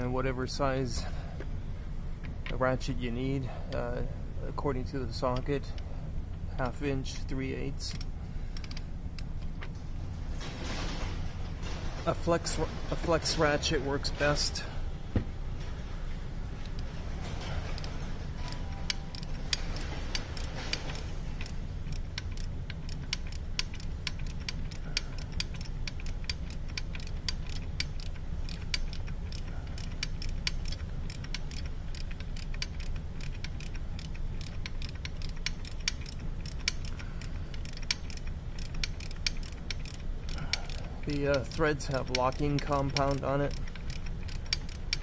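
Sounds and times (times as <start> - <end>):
ratchet clicking: 6.6 - 9.7, 16.6 - 45.0.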